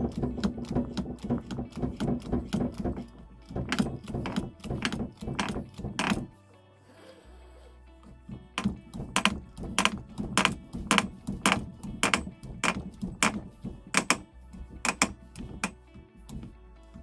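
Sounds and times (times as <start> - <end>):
percussive beat: 8.6 - 15.8.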